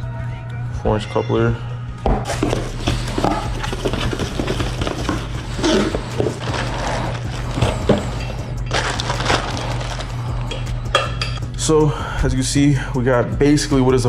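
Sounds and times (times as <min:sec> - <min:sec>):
packaging rustling: 0:02.3 - 0:10.5
steady low hum: 0:02.3 - 0:13.8.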